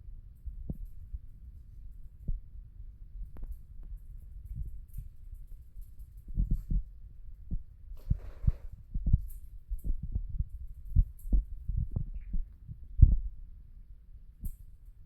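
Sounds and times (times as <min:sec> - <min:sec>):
soft low thumps: 0:06.3 - 0:13.4.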